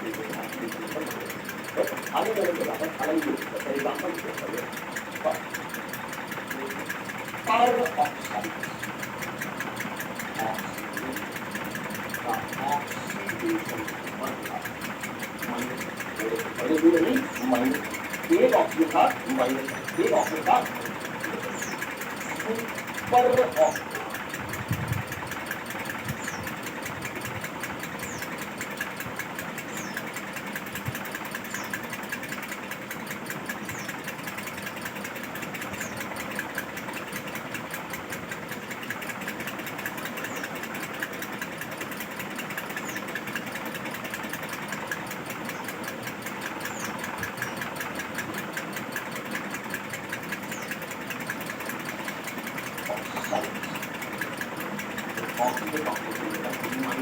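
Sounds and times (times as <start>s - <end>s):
motor running with fast rattle: 0.0s - 57.0s.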